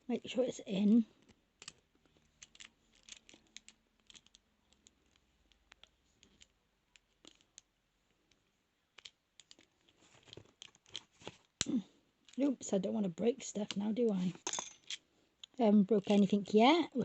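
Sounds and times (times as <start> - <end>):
lock pick clicking and scratching: 1.2 - 11.6.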